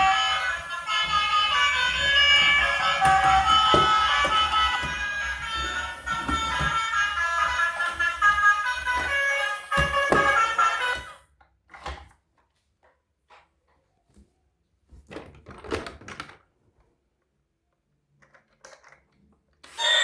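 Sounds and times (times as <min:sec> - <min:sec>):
toy packaging clicks and knocks: 0:00.0 - 0:11.1, 0:18.2 - 0:19.3.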